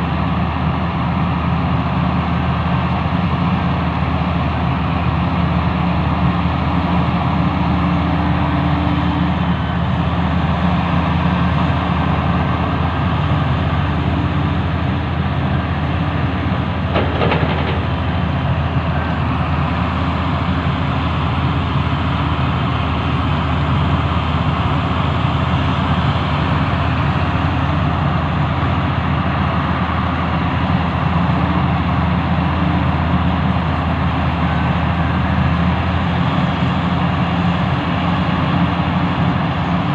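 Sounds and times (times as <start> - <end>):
excavator diesel engine running: 0.0 - 39.9
metallic clatter: 16.5 - 18.3.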